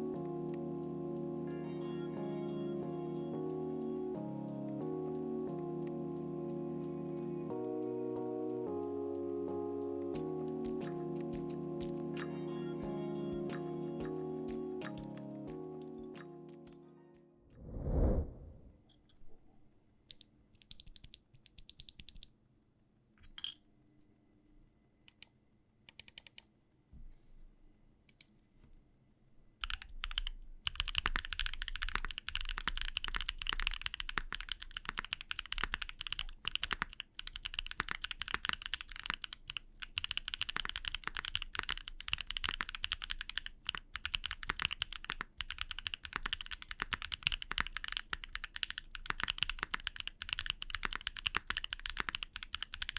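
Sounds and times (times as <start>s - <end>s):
mechanical keyboard typing: 20.1s - 22.3s, 25.9s - 26.4s, 29.6s - 52.9s.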